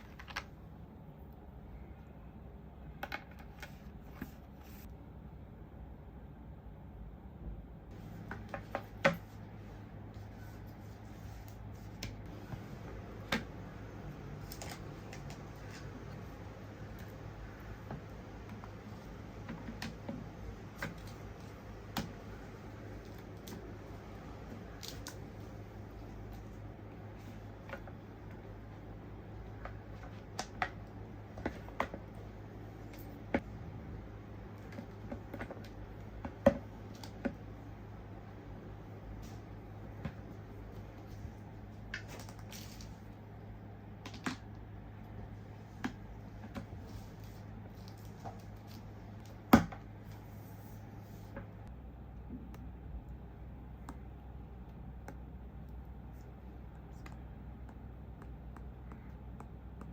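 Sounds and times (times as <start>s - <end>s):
low steady hum: 0.0s - 59.9s.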